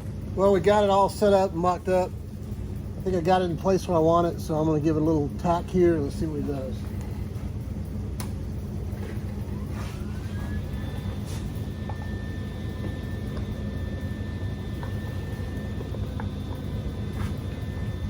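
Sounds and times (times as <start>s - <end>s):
low hum: 0.0s - 18.0s
electric motor whine: 5.6s - 18.0s.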